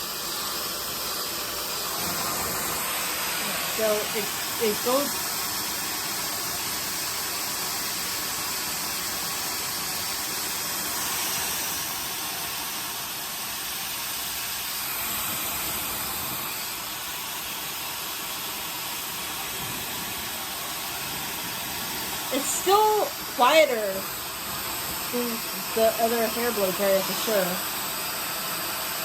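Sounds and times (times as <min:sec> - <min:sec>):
hair dryer running: 0:00.0 - 0:29.0.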